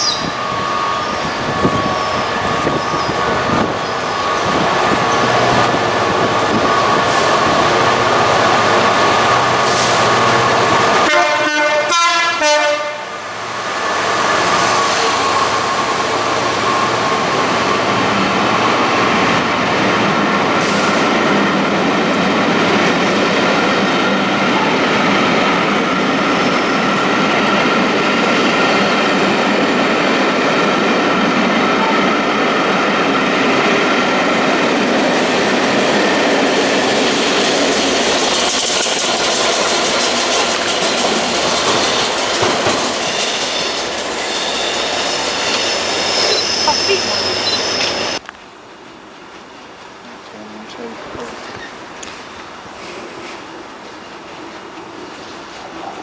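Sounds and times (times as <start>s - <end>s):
train rumbling past: 0.0s - 56.0s
thin whining tone: 41.8s - 48.2s
pulsing stacked tone: 43.6s - 48.2s.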